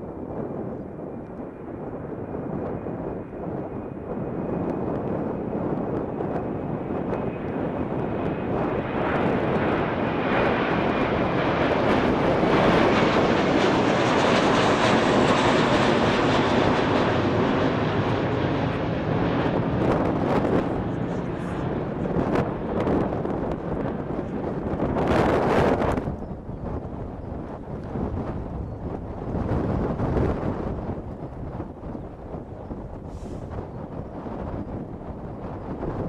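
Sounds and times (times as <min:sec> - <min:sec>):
jet engines roaring on takeoff: 0:00.0 - 0:36.0.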